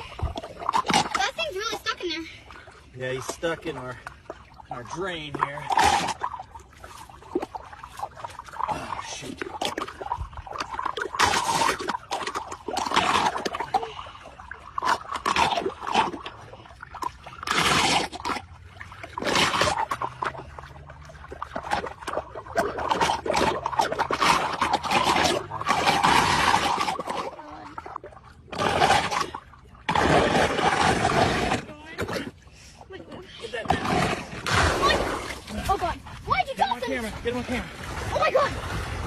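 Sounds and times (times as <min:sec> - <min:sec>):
water scraping and splashing in drain: 0:00.0 - 0:39.0.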